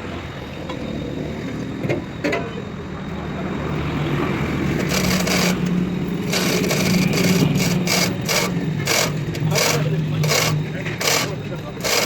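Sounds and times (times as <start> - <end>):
hand tool rasping on metal: 4.8 - 5.7, 6.3 - 12.0.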